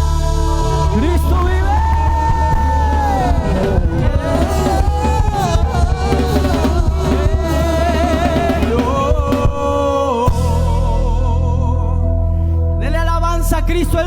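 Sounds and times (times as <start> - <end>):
drum kit: 0.0 - 11.4
worship band playing: 0.0 - 13.9
steady bass: 0.0 - 14.0.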